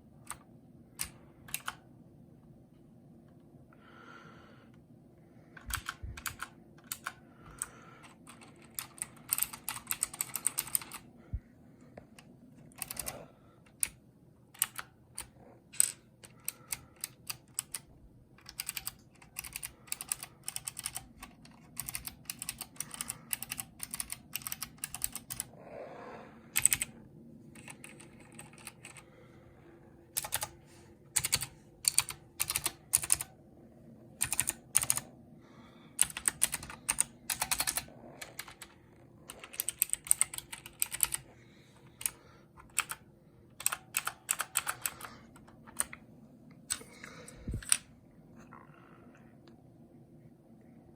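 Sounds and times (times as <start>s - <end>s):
clicky mechanical keyboard typing: 0.2s - 1.8s, 5.5s - 11.1s, 12.2s - 25.6s, 26.5s - 29.1s, 30.1s - 33.3s, 34.2s - 35.1s, 36.0s - 46.0s, 46.7s - 47.9s.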